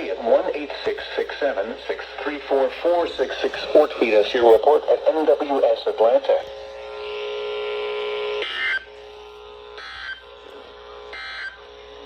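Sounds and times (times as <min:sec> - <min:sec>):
steady radio hum: 0:00.0 - 0:12.0.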